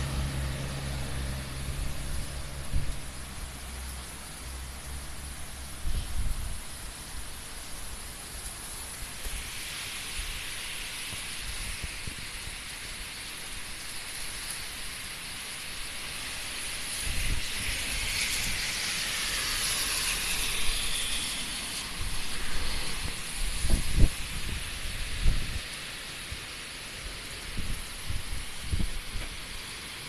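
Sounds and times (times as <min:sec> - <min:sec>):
heavy rain: 0:00.0 - 0:30.0
wind: 0:00.0 - 0:30.0
wind buffeting microphone: 0:01.6 - 0:03.1, 0:17.0 - 0:18.8, 0:21.9 - 0:25.7, 0:27.4 - 0:29.5.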